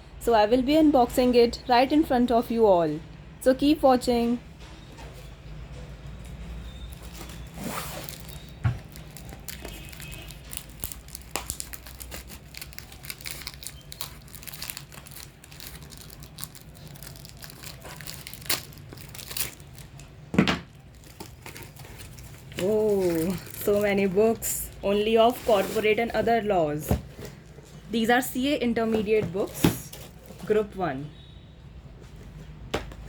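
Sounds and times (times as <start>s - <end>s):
packaging torn and crinkled: 8.0s - 20.1s, 20.7s - 23.9s.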